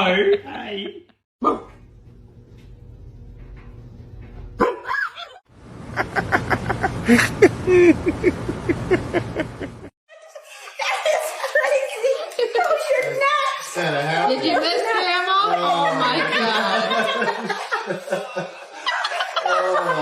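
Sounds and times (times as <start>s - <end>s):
dog barking: 1.4s - 1.7s, 4.6s - 5.0s
steady low hum: 1.4s - 4.6s, 5.6s - 9.9s.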